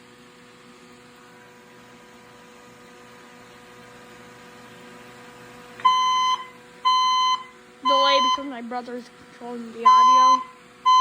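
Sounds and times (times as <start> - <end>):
high-pitched alarm beep: 5.8 - 8.5, 9.8 - 11.0.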